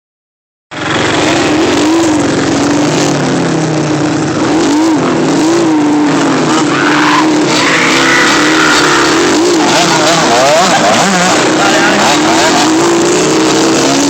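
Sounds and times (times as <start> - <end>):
loud rushing noise: 0.7 - 14.0
small engine revving: 4.4 - 14.0.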